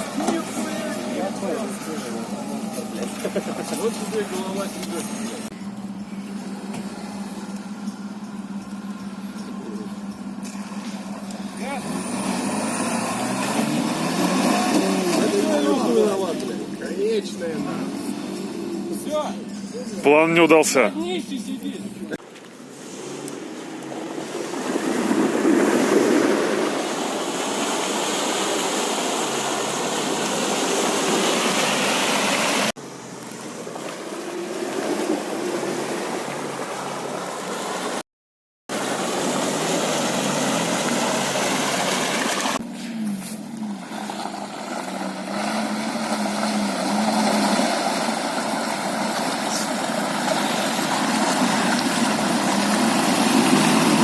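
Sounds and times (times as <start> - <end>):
van engine running hard: 0.0 - 22.2, 38.7 - 54.0
tyres churning through ground: 0.0 - 38.0, 38.7 - 54.0.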